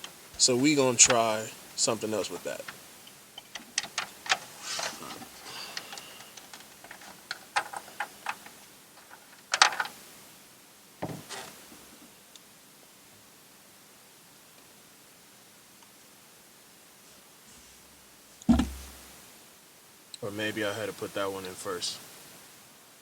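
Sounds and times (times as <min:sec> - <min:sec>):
dull knock: 0:18.5 - 0:19.0.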